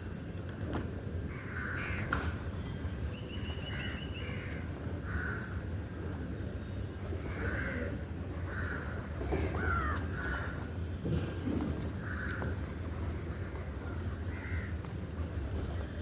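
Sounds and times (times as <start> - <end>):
crows cawing: 1.3 - 2.3, 3.7 - 5.6, 7.2 - 10.6, 12.0 - 12.6, 13.3 - 14.8.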